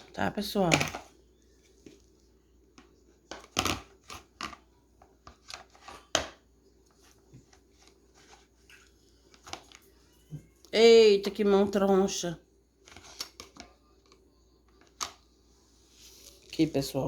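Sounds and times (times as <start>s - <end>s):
kitchen items clicking and scraping: 0.0s - 1.2s, 3.3s - 6.4s.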